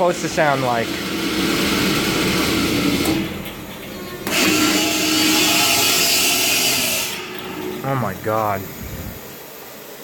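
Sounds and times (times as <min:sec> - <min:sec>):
vacuum pump motor grinding: 0:00.4 - 0:07.8
high hiss: 0:04.3 - 0:10.0.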